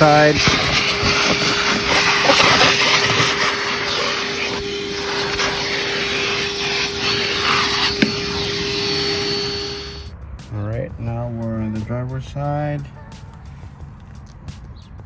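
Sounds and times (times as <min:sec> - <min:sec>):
shop vacuum running: 0:00.0 - 0:10.1.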